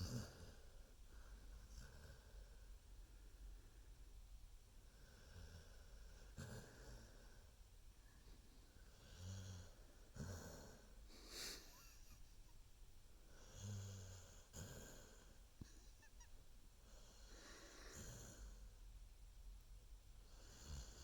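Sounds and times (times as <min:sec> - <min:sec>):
baby snoring: 0:09.0 - 0:12.3.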